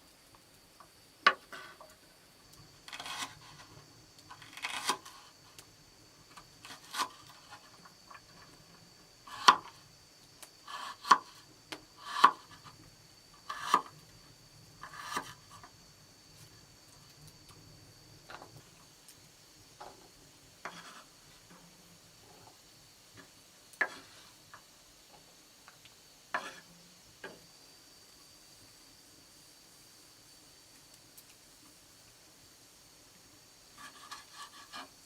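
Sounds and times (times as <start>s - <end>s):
sticks scraping: 2.9s - 3.7s.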